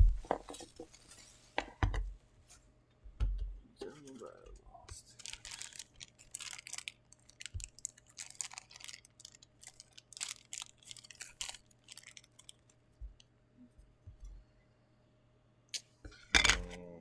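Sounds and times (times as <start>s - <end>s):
soft thumps: 0.0s - 0.9s
plastic packaging crinkling: 5.0s - 12.9s.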